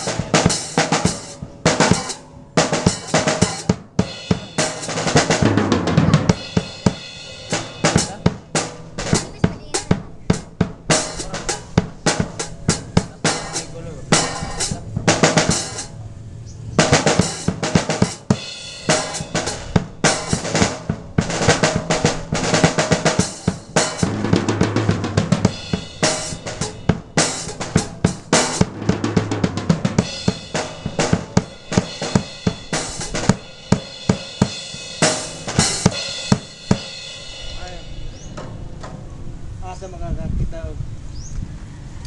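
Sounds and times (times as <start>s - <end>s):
drum kit playing: 0.0s - 16.0s, 16.7s - 40.0s
cymbal hits: 22.7s - 39.3s.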